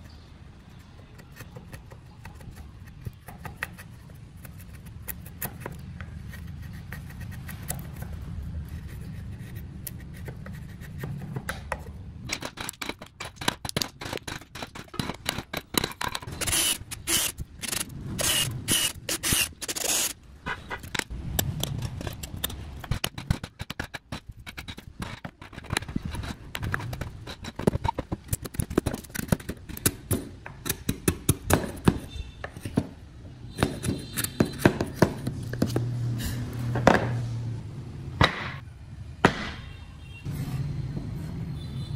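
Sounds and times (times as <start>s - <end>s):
hand tools scraping wood: 21.7s - 29.9s.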